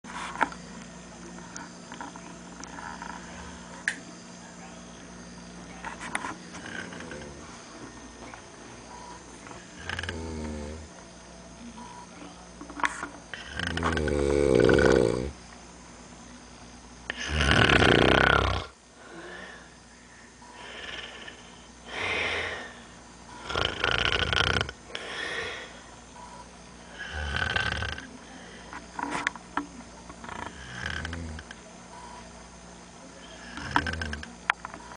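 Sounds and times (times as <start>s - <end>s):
man snoring: 9.7s - 10.9s, 13.3s - 15.4s, 17.1s - 18.8s, 20.5s - 22.8s, 23.4s - 25.7s, 26.9s - 28.1s, 30.3s - 31.5s, 33.2s - 34.3s
soft breaths: 18.9s - 23.8s, 24.9s - 29.3s.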